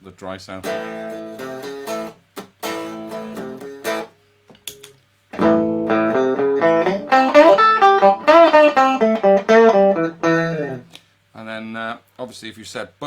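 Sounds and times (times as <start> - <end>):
electric guitar playing: 0.6 - 4.2, 5.4 - 11.0.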